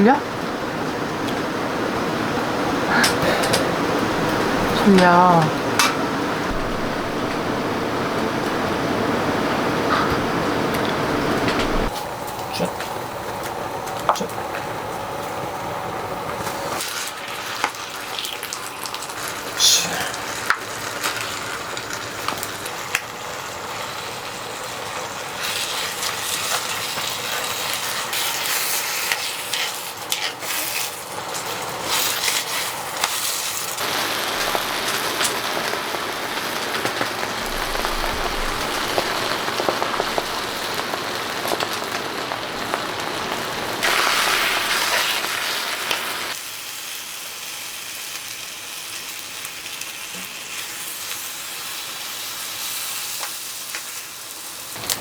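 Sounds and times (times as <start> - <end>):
food sizzling in a frying pan: 0.0 - 55.0.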